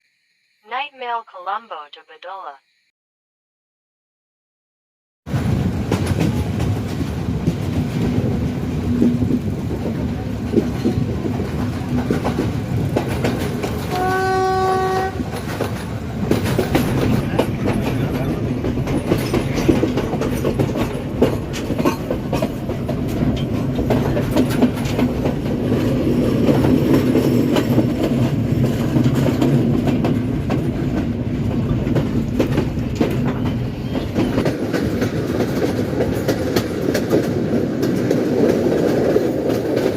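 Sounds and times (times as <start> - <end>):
train rumbling on track: 5.3 - 39.9
train horn: 13.9 - 15.3
wheels clacking over rail joints: 15.3 - 39.9.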